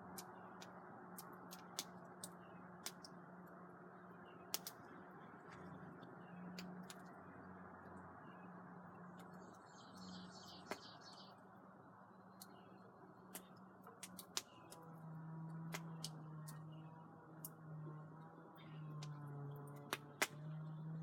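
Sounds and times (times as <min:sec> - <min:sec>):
campfire crackling and popping: 0:00.0 - 0:03.2, 0:04.4 - 0:04.8, 0:13.2 - 0:14.8, 0:15.7 - 0:16.7, 0:19.0 - 0:20.4.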